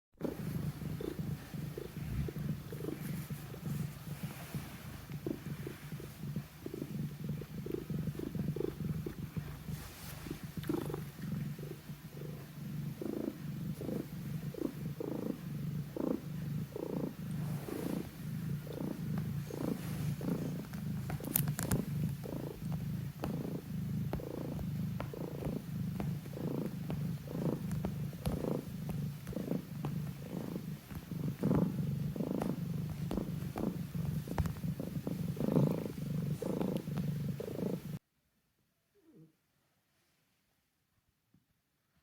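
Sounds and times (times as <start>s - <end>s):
cat purring: 0.2s - 38.0s.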